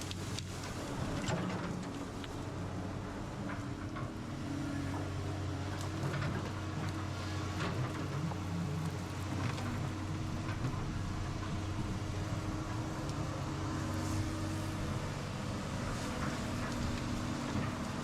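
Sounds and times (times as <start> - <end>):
excavator engine running: 0.0 - 18.0.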